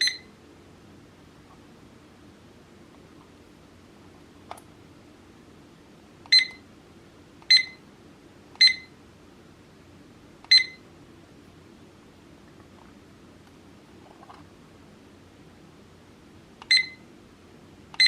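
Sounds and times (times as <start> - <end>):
short high clock beeps: 0.0 - 0.3, 6.3 - 6.6, 7.5 - 7.8, 8.6 - 8.9, 10.5 - 10.8, 16.7 - 17.0.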